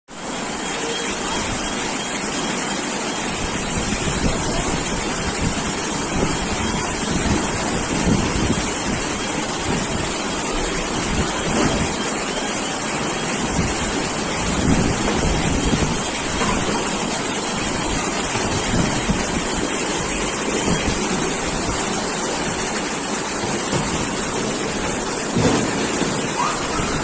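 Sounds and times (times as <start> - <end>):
heavy rain hissing: 0.1 - 27.0
wind gusts buffeting microphone: 3.5 - 12.0, 13.4 - 22.7.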